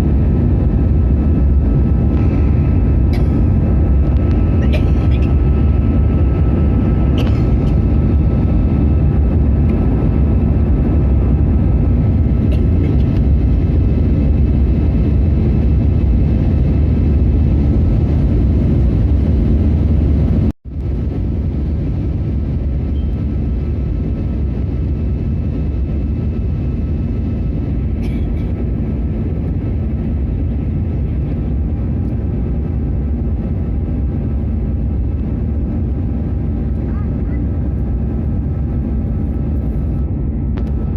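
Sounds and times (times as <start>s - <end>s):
airplane cabin rumble: 0.0s - 40.9s.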